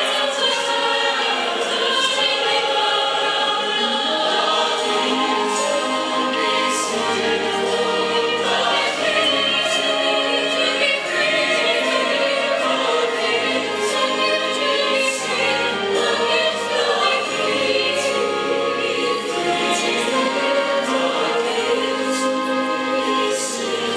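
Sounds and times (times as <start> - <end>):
choir singing in harmony: 0.0 - 23.9
instrumental accompaniment: 2.8 - 23.9.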